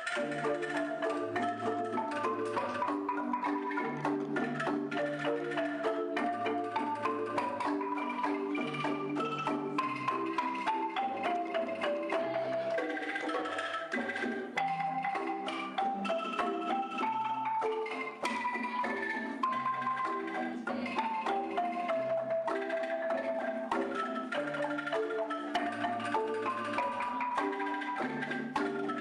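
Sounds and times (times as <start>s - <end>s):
light percussion: 0.0s - 29.0s
marimba melody: 0.0s - 29.0s.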